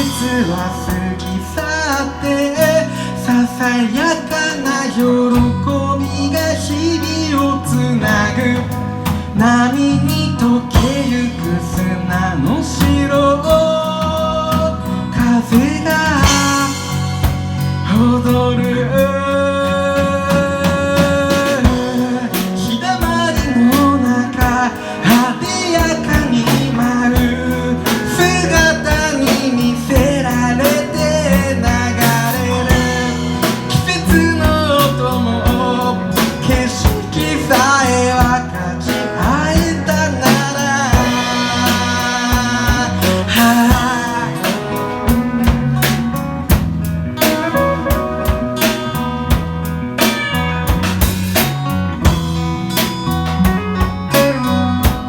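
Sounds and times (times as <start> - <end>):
guitar melody with sliding notes: 0.0 - 55.0
steady drum beat: 0.0 - 55.0
strummed acoustic guitar: 0.0 - 55.0.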